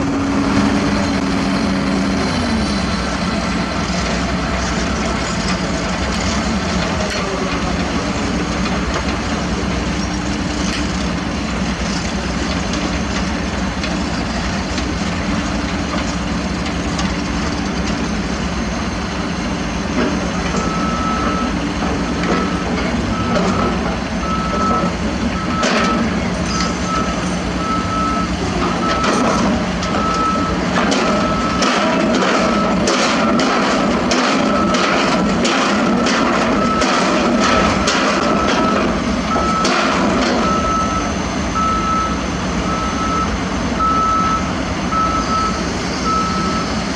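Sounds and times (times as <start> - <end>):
heavy machinery engines running: 0.0 - 46.9
reversing alarm beeping: 20.4 - 46.9.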